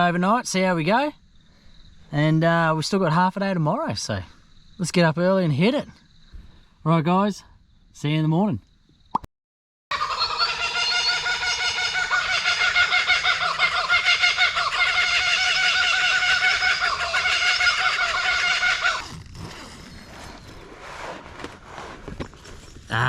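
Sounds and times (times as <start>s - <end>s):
chorus of wavering animal calls: 9.9s - 19.2s.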